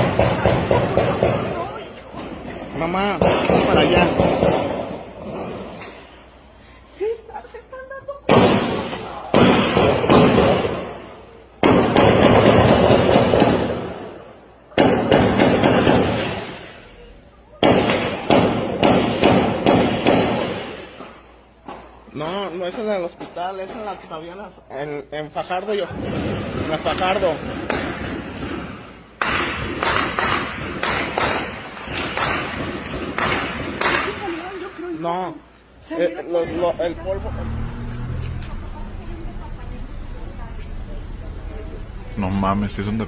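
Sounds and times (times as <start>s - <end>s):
gunshots with echo: 3.1s - 5.7s, 8.3s - 14.2s.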